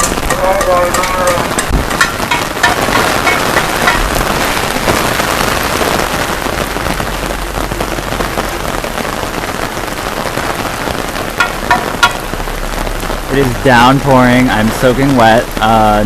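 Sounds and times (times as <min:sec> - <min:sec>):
sharp knocks: 0:00.0 - 0:04.5, 0:11.4 - 0:12.3
heavy rain pouring: 0:00.0 - 0:16.0.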